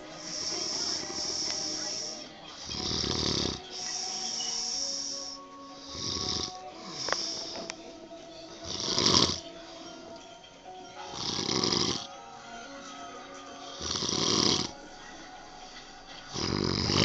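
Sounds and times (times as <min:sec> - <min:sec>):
dog snoring: 0:00.0 - 0:07.7, 0:08.5 - 0:09.4, 0:11.0 - 0:12.1, 0:13.7 - 0:14.8, 0:16.3 - 0:17.0
faint background music: 0:00.0 - 0:17.0.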